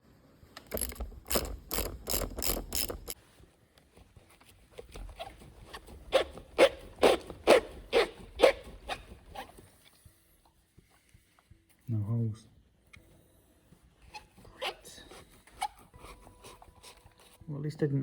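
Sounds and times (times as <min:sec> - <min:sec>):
rasping mechanical strokes: 0:00.6 - 0:03.2.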